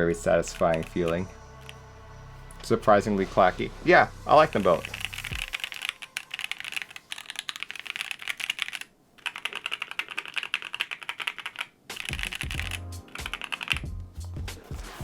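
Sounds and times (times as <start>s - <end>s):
fast mechanical keyboard typing: 0.5s - 1.8s, 4.5s - 13.9s.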